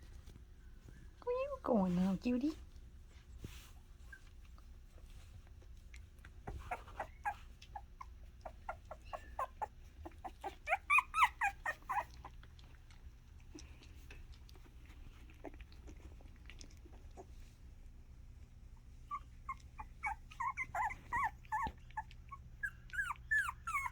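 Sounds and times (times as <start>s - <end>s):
puppies yipping and squealing: 6.5s - 12.4s, 19.0s - 23.9s.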